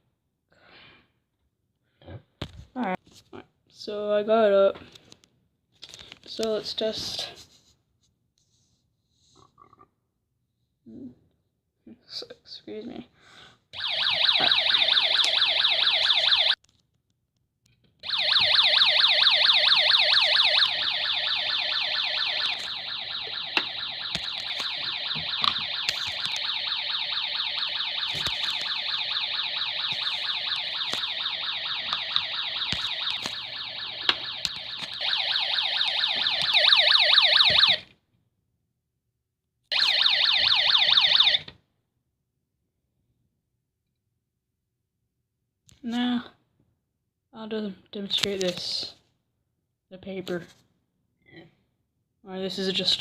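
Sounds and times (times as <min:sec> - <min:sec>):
rapidly pulsing electronic alarm: 0:13.8 - 0:16.6, 0:18.0 - 0:37.8, 0:39.7 - 0:41.4.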